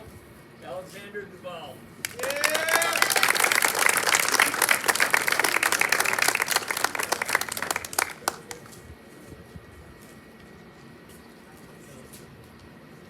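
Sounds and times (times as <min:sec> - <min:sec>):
audience applause: 0:02.0 - 0:08.8.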